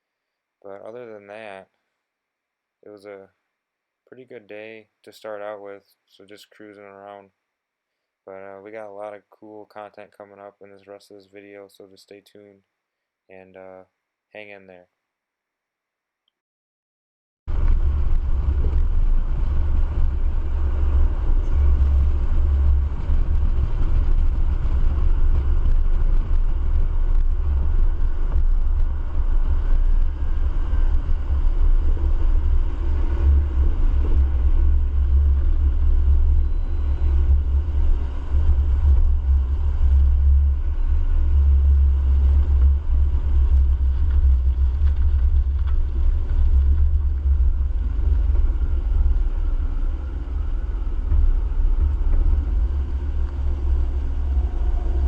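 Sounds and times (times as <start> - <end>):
vehicle engine and road noise: 17.5 - 55.0.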